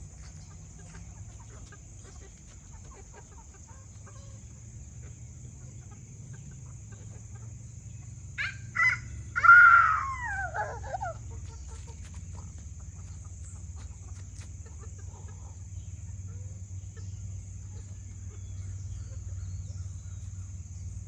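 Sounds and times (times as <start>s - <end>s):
chickens clucking: 0.0s - 21.0s.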